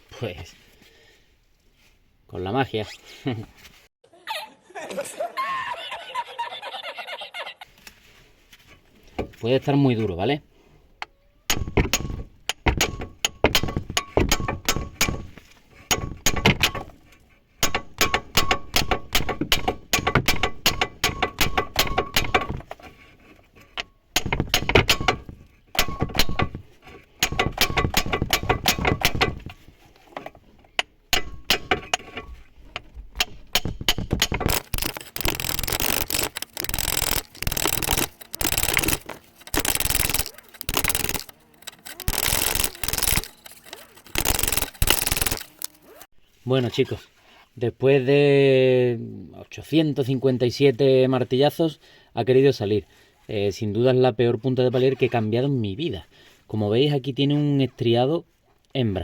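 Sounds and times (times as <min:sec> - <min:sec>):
rapid hammer blows on metal: 0:33.5 - 0:45.6.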